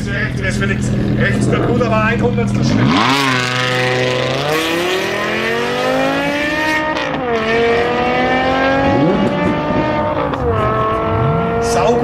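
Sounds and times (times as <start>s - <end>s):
car engine accelerating hard: 0.0s - 12.0s.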